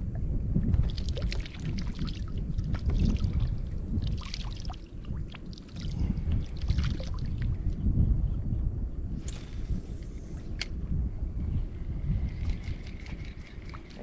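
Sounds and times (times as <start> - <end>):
water splashing around kayak: 0.0 - 7.6
wind rumble on microphone: 0.0 - 14.0.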